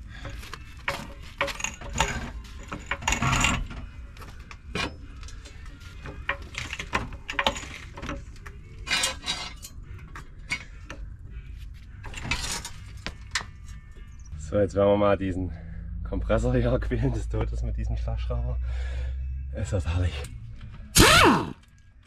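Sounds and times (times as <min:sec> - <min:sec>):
metallic clacking from car axle: 0:00.3 - 0:09.7.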